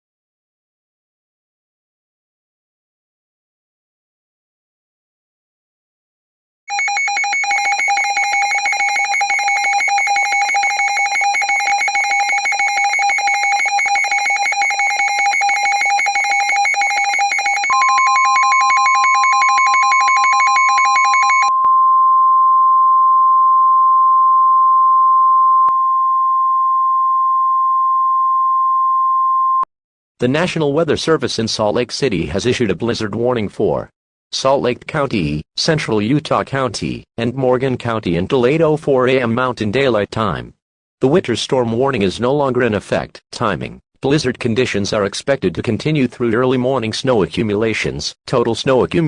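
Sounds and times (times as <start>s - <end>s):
pulsing two-tone alarm: 6.7s - 21.6s
steady single-pitch alarm tone: 6.7s - 23.8s.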